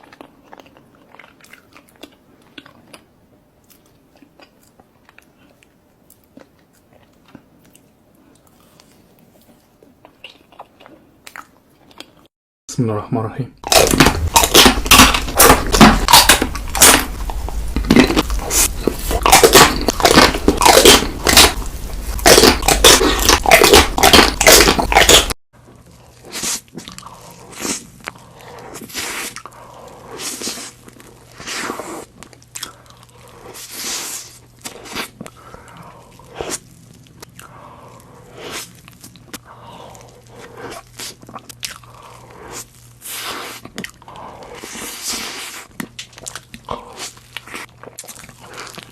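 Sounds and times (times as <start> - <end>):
crunching and chewing cake: 0.0 - 12.3, 13.6 - 48.9
soft chewing clicks: 0.0 - 12.3
faint steady hum: 0.0 - 48.9.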